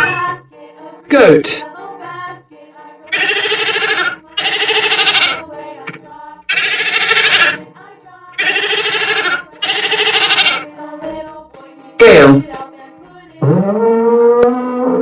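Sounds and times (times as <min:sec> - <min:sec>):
background music: 0:00.0 - 0:15.0
goat bleating: 0:03.1 - 0:05.4, 0:06.5 - 0:07.6, 0:08.4 - 0:10.6.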